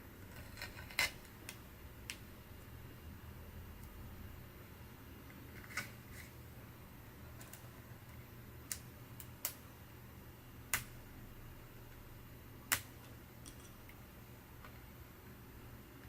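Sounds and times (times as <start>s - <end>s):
faint low hum: 0.0s - 16.0s
clicks of laptop parts and tools: 0.3s - 2.2s, 7.4s - 7.7s, 10.7s - 11.0s, 12.7s - 13.9s.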